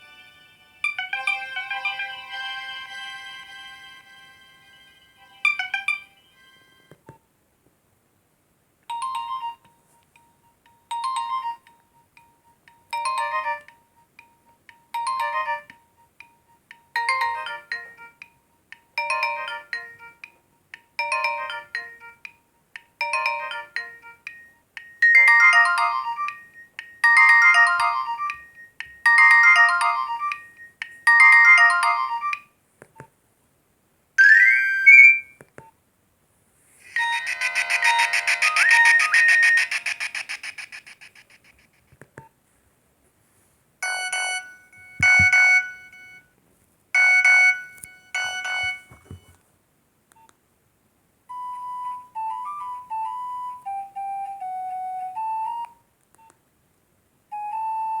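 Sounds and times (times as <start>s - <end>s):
mobile phone ringtone melody: 0.0s - 6.9s, 8.9s - 22.4s, 23.0s - 32.5s, 34.2s - 35.4s, 36.8s - 41.4s, 43.8s - 46.3s, 47.0s - 49.4s, 51.3s - 55.7s.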